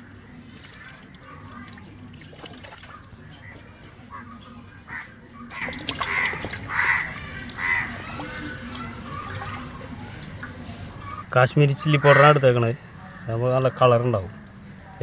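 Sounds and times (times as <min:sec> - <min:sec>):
chicken rinsed in water: 0:00.4 - 0:03.9, 0:05.5 - 0:11.2.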